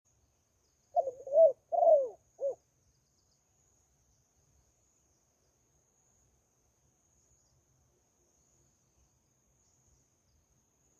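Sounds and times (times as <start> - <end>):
dove cooing: 1.0 - 2.6.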